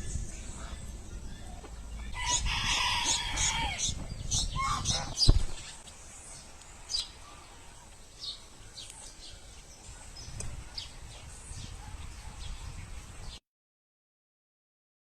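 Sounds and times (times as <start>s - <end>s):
low rumble: 0.0s - 5.3s
small birds chirping: 0.0s - 13.4s.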